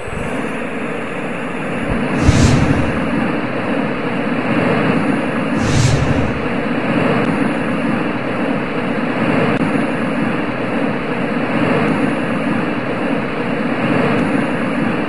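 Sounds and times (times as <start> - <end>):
white noise hiss: 1.9 - 3.4.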